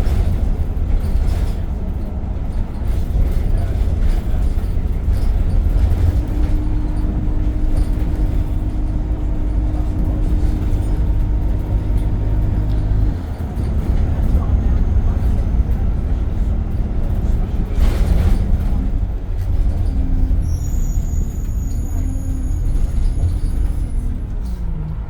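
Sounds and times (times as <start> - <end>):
bus engine rumble: 0.0 - 25.0.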